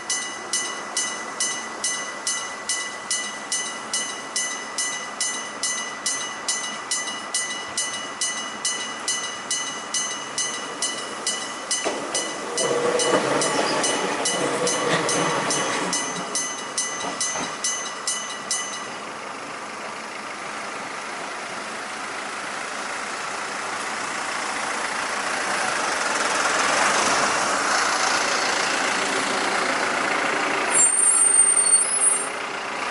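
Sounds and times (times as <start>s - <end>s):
level crossing bell ringing: 0.0s - 19.0s
electric train rumbling: 0.0s - 32.9s
road vehicle approaching: 0.0s - 32.9s.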